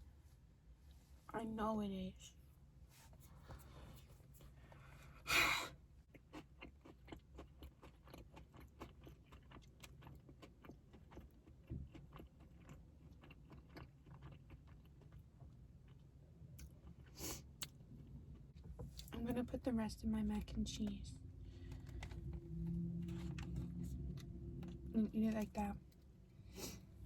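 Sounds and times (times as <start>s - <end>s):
person chewing: 6.1s - 17.8s.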